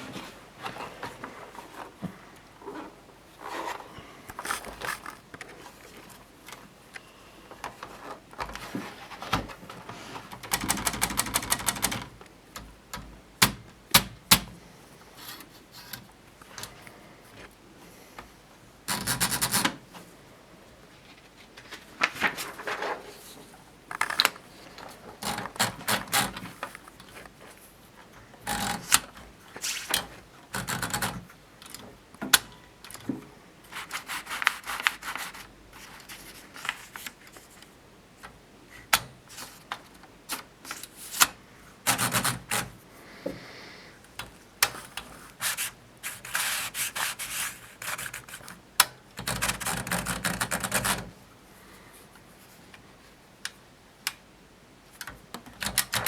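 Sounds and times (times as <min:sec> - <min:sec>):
typewriter clicks and rasping: 0:10.2 - 0:14.6, 0:18.9 - 0:19.9, 0:23.9 - 0:27.2, 0:28.4 - 0:33.1, 0:38.8 - 0:42.8, 0:44.2 - 0:51.1, 0:55.0 - 0:56.0.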